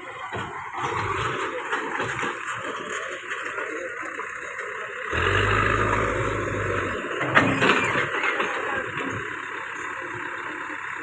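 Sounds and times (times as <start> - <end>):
low engine hum: 5.1 - 11.0.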